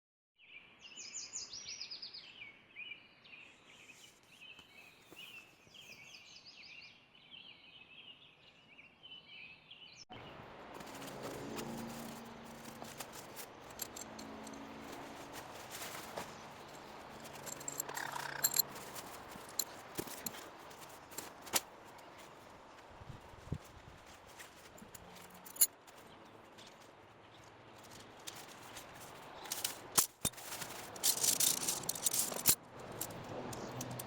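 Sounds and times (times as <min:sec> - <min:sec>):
songbirds chirping and trilling: 0:00.4 - 0:30.0
scattered clicks: 0:29.4 - 0:34.0.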